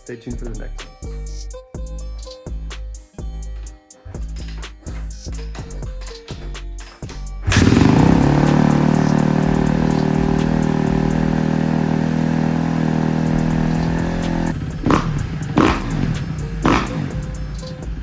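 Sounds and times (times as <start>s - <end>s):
motorcycle engine idling and revving: 4.2s - 18.0s.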